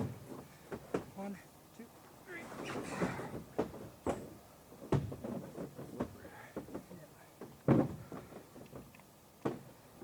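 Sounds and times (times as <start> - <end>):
carcass thumping on wooden boards: 3.1 - 9.7.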